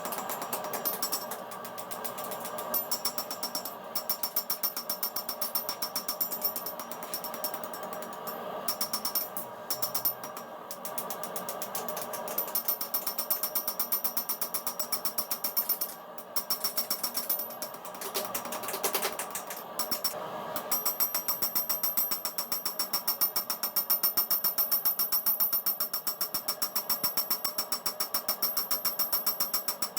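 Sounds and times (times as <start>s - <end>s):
power hammer pounding steel: 0.0s - 18.6s.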